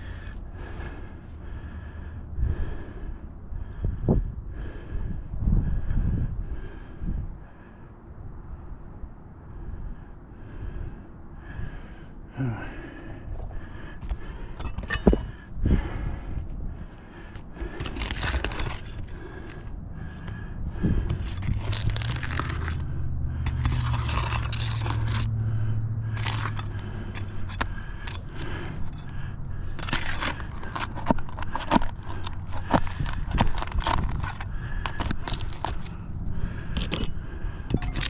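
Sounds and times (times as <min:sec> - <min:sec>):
low steady hum: 0:00.0 - 0:38.0.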